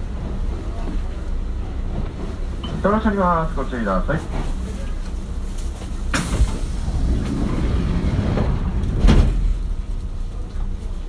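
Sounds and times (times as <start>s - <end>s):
low train hum: 0.0s - 11.0s
train doors sliding shut: 1.8s - 11.0s.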